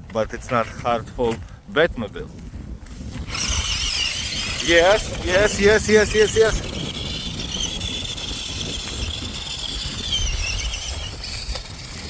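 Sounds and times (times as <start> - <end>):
wind rumble on microphone: 0.0 - 12.0
toy truck electric motor whining: 3.2 - 12.0.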